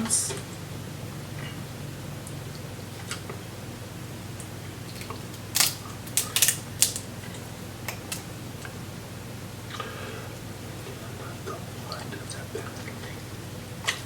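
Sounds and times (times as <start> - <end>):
low steady hum: 0.0 - 14.0
crab shell cracking: 4.4 - 8.8.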